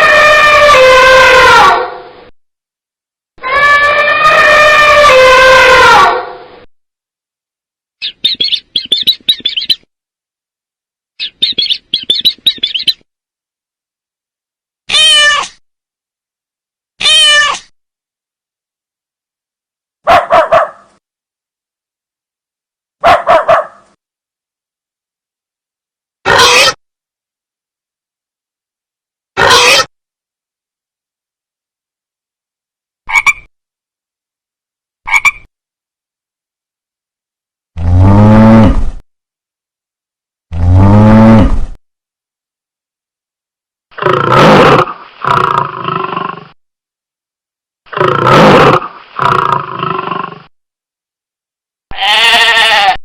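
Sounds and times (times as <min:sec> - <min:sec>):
low-pitched animal call: 0:00.0 - 0:02.3, 0:03.4 - 0:06.7, 0:43.9 - 0:46.6, 0:47.9 - 0:50.5
cat meowing: 0:14.9 - 0:15.6, 0:17.0 - 0:17.7
dog barking: 0:20.0 - 0:20.9, 0:23.0 - 0:23.9.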